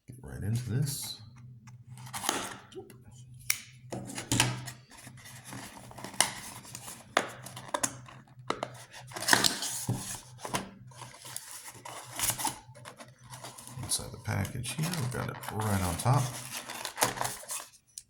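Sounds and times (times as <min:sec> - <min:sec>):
cardboard and plastic packaging rustling: 0:01.9 - 0:02.9, 0:03.9 - 0:17.9.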